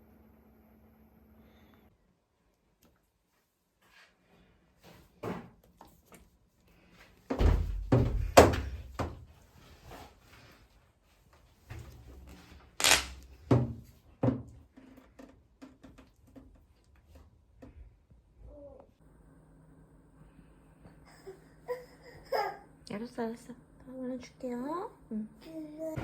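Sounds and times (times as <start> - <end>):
knocks and thuds of handled objects: 7.3 - 9.3, 12.8 - 14.6.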